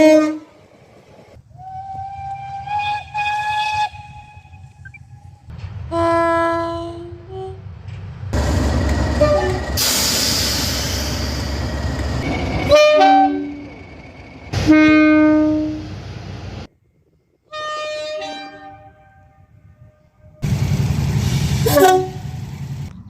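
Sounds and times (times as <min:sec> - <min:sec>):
two-tone train air horn: 0:00.0 - 0:00.5, 0:09.2 - 0:10.4, 0:12.2 - 0:13.6, 0:14.6 - 0:15.9, 0:17.5 - 0:20.4, 0:21.6 - 0:22.3
train rushing rumble: 0:00.0 - 0:17.2, 0:19.5 - 0:23.0.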